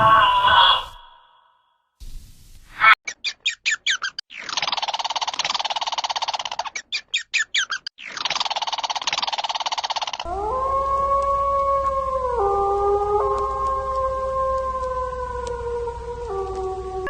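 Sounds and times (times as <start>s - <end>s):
bird chirping and trilling: 3.0s - 8.8s.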